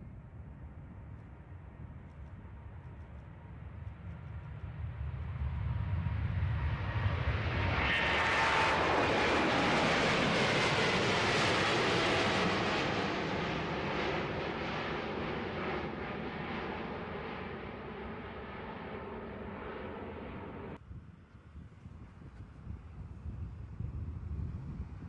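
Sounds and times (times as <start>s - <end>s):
jet engines roaring with high whine: 0.0s - 20.8s.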